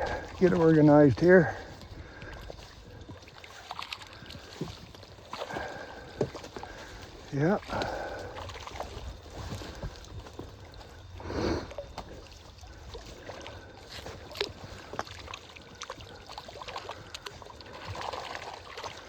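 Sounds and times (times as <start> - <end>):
water rush: 0.0 - 4.7
water sloshing around boat: 0.0 - 19.0.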